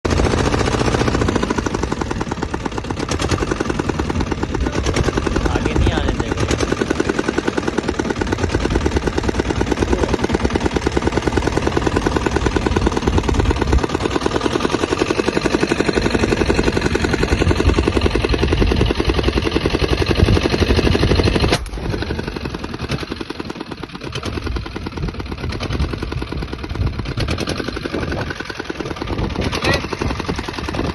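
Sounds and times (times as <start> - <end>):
motor engine running: 0.0 - 30.9
sharp crack: 21.3 - 23.1.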